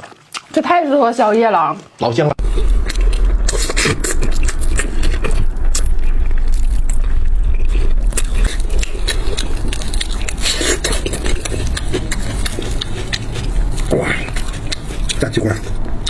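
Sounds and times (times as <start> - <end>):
chewing fried food: 0.0 - 0.6, 7.7 - 16.0.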